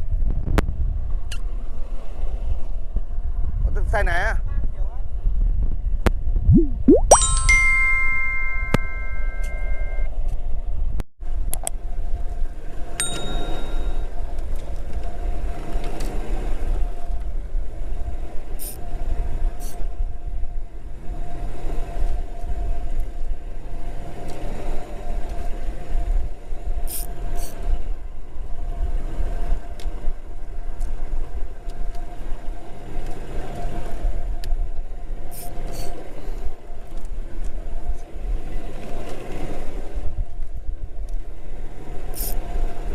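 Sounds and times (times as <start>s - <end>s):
short chime of held tones: 6.9s - 10.1s.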